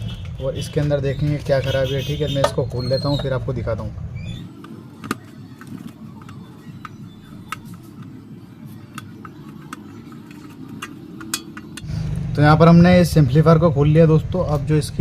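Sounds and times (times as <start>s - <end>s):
clicks and taps of metal tools: 8.9s - 11.9s.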